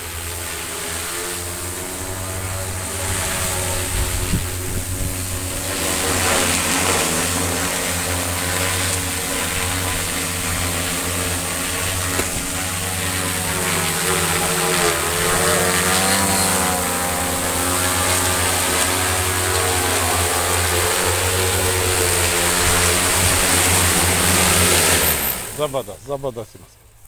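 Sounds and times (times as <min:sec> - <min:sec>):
drone propellers buzzing: 0:00.0 - 0:27.0.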